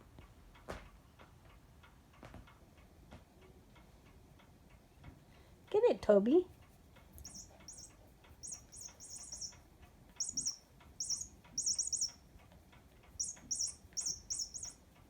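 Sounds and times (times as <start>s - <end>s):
faint clicking: 6.5s - 15.0s
toy mouse squeaking: 7.2s - 9.6s, 10.2s - 12.2s, 13.2s - 14.8s.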